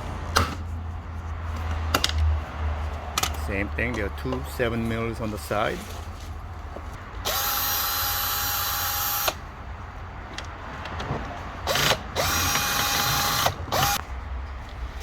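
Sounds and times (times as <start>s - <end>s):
cordless power driver spinning: 7.3s - 9.4s, 11.7s - 14.0s.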